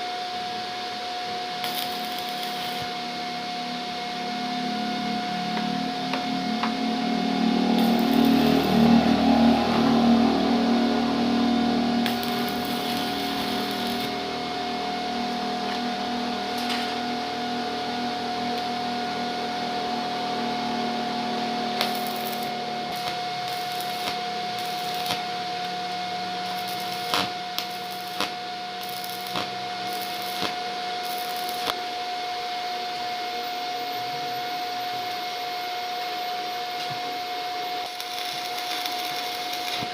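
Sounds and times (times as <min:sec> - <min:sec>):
welding machine whine: 0:00.0 - 0:39.9
sharp welding pops: 0:01.6 - 0:02.9, 0:12.0 - 0:14.1, 0:21.8 - 0:25.3, 0:26.5 - 0:31.8, 0:37.8 - 0:39.9
welding hiss and crackle: 0:01.6 - 0:03.0, 0:07.7 - 0:08.9, 0:12.0 - 0:14.3, 0:16.5 - 0:17.2, 0:21.7 - 0:31.9, 0:37.8 - 0:39.9.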